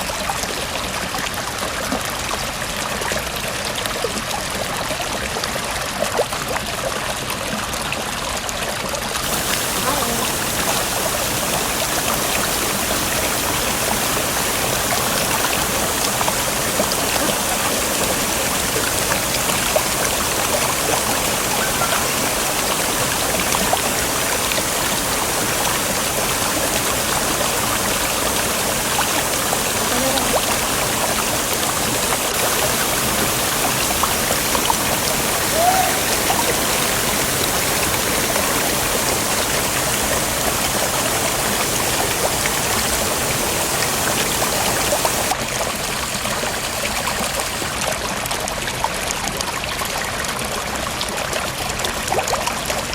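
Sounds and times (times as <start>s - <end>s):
waterfall water rushing: 9.2s - 48.0s.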